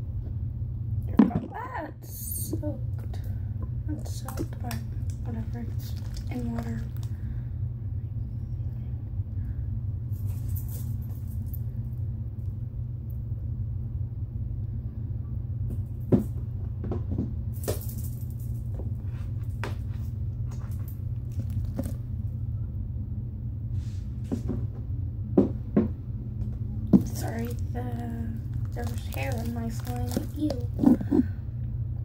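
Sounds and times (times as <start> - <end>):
low background hum: 0.0 - 32.0.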